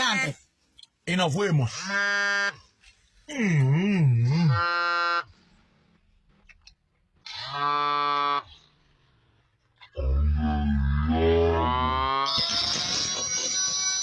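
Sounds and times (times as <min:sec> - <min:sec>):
cow mooing: 0:04.2 - 0:05.3, 0:07.3 - 0:08.5, 0:10.0 - 0:12.3.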